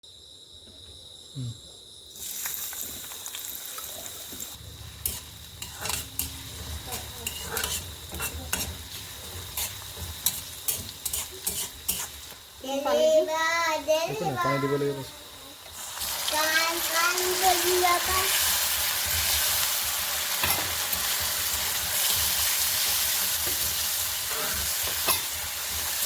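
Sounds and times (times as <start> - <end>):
food sizzling in a pan: 2.1 - 26.0
spatula scraping a pan: 4.8 - 12.4, 20.4 - 26.0.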